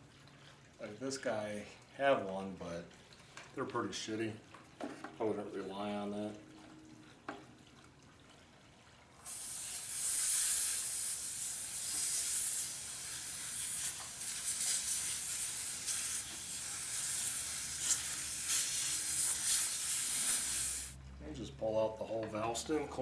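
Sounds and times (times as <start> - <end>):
air hissing out of tire: 9.2 - 21.0.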